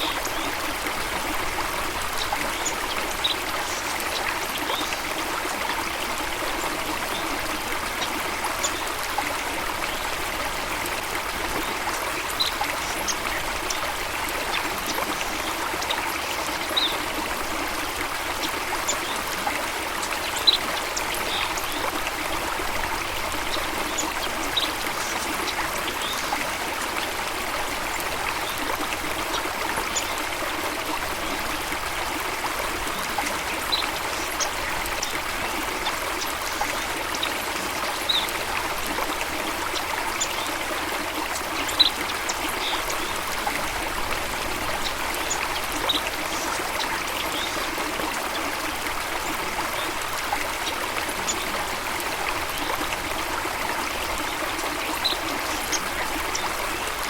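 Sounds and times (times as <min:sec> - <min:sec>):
running water rushing: 0:00.0 - 0:57.0.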